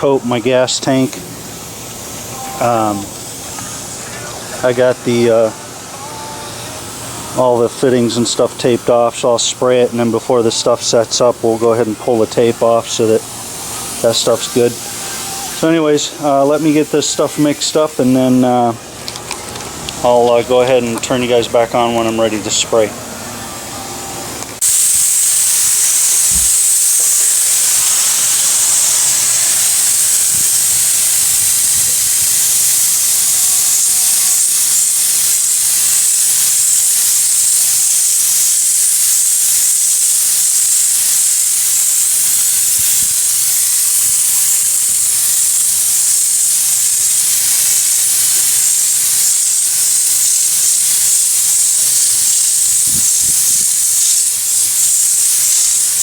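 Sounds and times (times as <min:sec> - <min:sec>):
spray gun air hiss: 0:00.0 - 0:56.0.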